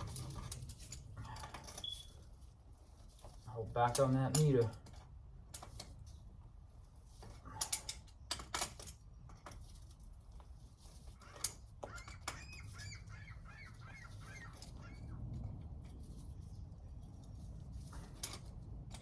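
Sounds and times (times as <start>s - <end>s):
rapid short squeaks: 1.2s - 2.4s, 11.0s - 15.2s.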